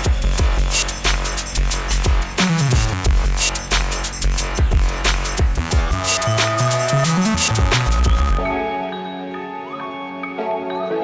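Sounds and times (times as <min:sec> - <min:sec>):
electronic drum and bass music: 0:00.0 - 0:08.8.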